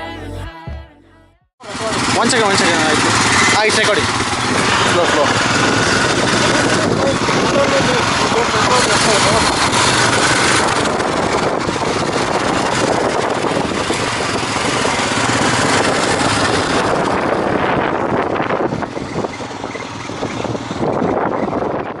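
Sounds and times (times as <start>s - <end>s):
motorcycle engine running: 1.6s - 22.0s
wind rushing on microphone: 5.5s - 22.0s.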